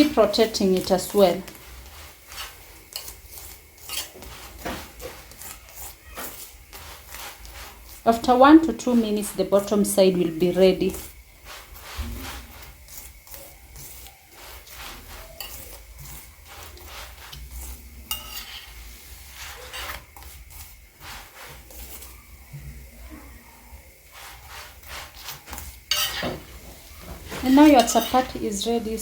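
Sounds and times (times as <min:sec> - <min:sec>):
utensil scraping a frying pan: 0:00.0 - 0:23.1, 0:23.8 - 0:29.0.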